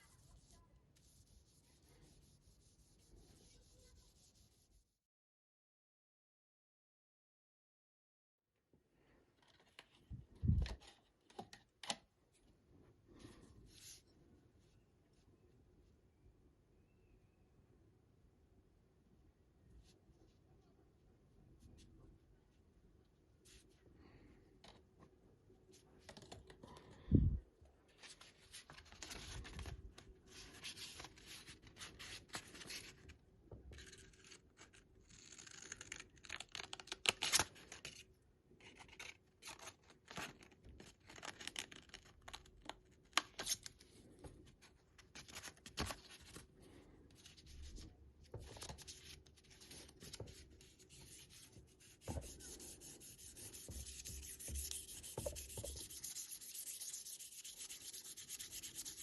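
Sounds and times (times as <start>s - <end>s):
sandpaper scraping wood: 50.9s - 59.0s.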